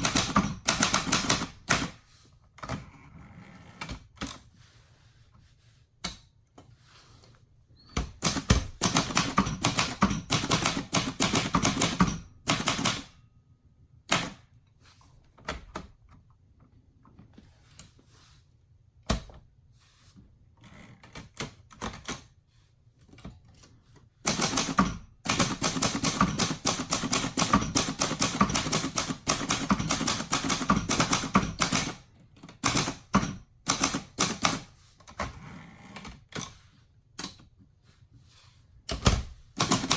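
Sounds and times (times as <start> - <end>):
typewriter keys striking: 0.0 - 2.0, 8.2 - 13.1, 24.3 - 34.7, 38.9 - 39.9.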